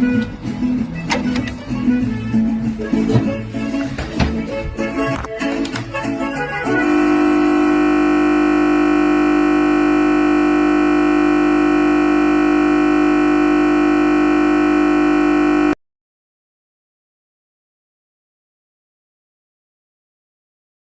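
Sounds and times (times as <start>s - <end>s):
music from a computer: 0.0s - 7.7s
loud buzzing drone: 6.8s - 15.8s.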